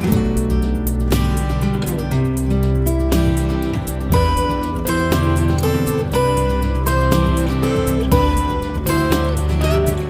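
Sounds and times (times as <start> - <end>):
bass line: 0.0 - 10.0
strummed acoustic guitar: 0.0 - 10.0.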